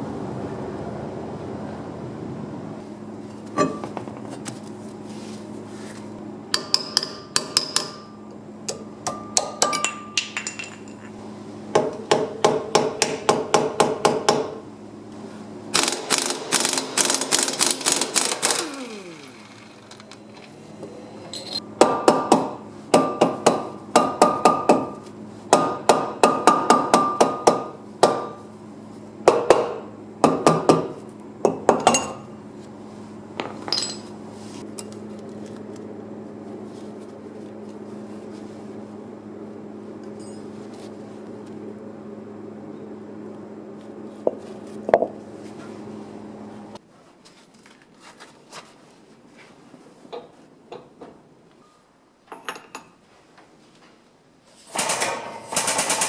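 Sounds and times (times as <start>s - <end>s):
hammer striking metal: 6.5s - 10.9s.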